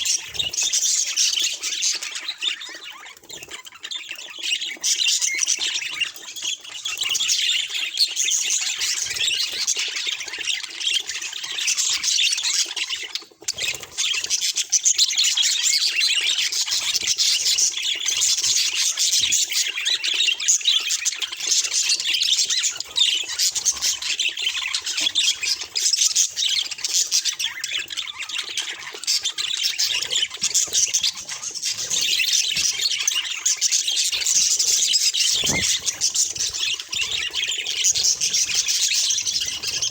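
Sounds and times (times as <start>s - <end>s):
budgerigar chirping and chattering: 21.6s - 39.9s.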